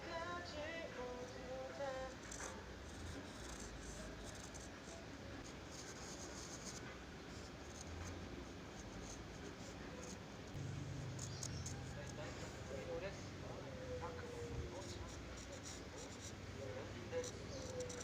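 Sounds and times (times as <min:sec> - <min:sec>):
steady background hiss: 0:00.0 - 0:18.0
pencil scratching on paper: 0:02.2 - 0:08.2, 0:14.3 - 0:16.4, 0:17.1 - 0:18.0.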